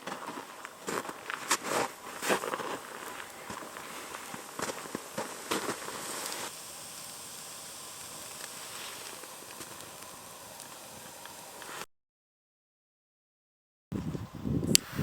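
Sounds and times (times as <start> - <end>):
bonfire crackling and hissing: 0.0 - 11.9.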